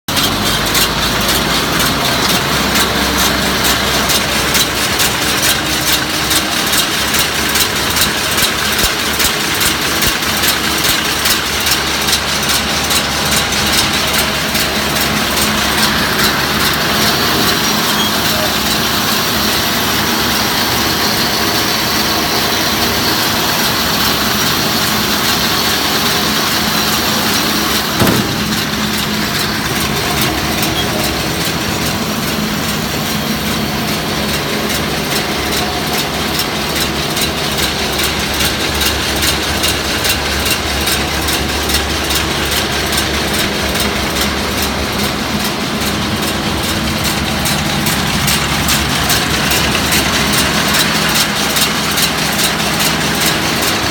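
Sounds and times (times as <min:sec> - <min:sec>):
tractor engine running: 0:00.0 - 0:53.9
fast even pulsing: 0:25.2 - 0:33.1
clunk: 0:27.7 - 0:31.1.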